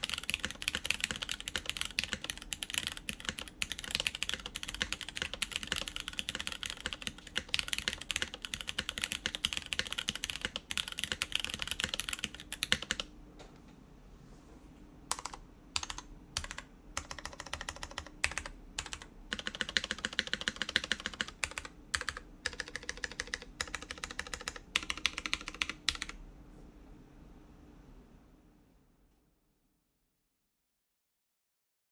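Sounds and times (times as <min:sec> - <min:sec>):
mechanical keyboard typing: 0:00.0 - 0:13.1, 0:15.1 - 0:26.2.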